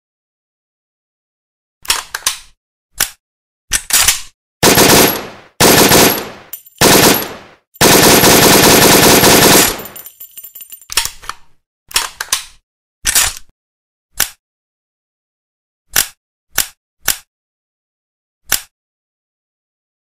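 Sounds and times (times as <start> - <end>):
automatic gunfire bursts: 4.6 - 10.0.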